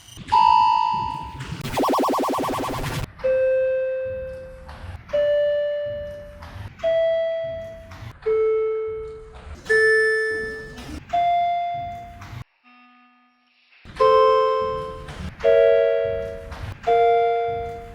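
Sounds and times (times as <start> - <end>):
elevator chime ding: 5.2 - 12.1.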